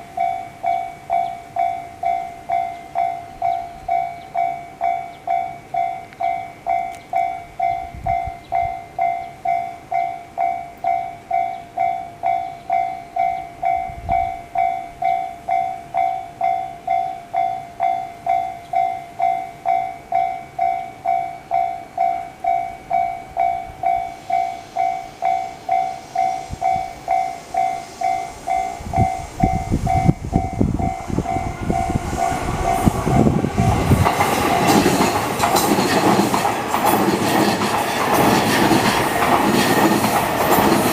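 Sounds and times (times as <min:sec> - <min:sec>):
level crossing alarm clanging: 0:00.0 - 0:40.9
train passing: 0:00.0 - 0:40.9.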